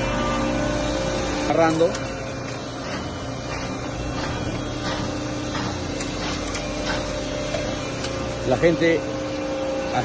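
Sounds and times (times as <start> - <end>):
baler mechanical hum: 0.0 - 10.0.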